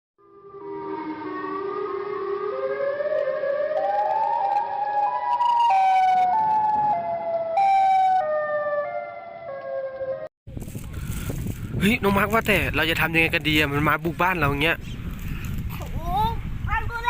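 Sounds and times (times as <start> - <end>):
wailing siren tone: 0.2 - 10.3.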